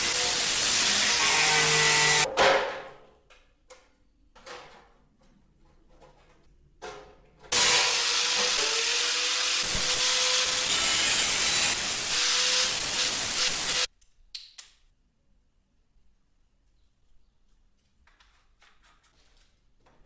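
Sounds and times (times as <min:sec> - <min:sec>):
paint spray hissing: 0:09.6 - 0:13.9.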